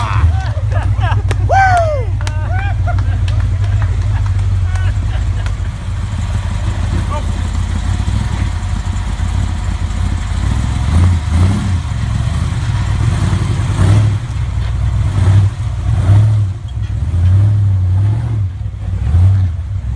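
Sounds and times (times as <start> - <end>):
engine revving hard: 0.0 - 5.5, 10.0 - 19.9.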